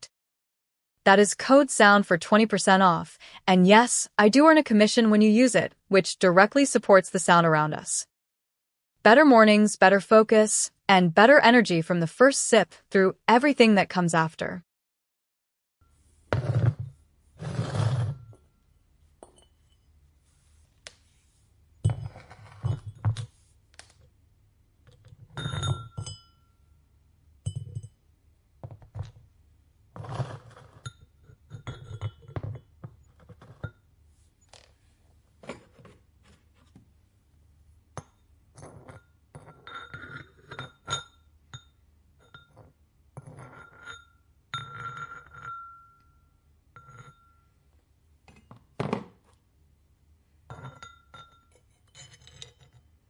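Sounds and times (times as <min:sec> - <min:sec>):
ceramic pieces clinking: 0:30.7 - 0:32.6, 0:38.6 - 0:46.1, 0:50.5 - 0:52.8.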